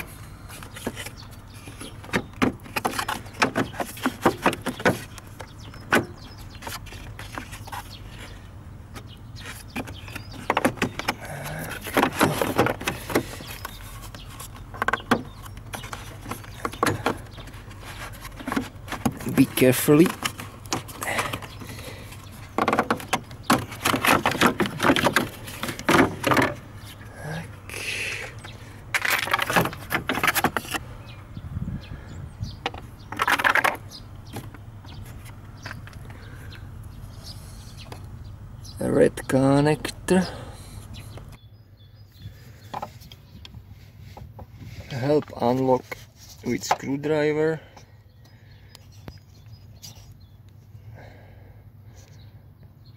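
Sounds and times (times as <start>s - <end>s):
clicks knocks and rattles: 0.6s - 7.8s, 9.0s - 26.6s, 28.4s - 30.8s, 32.6s - 36.2s.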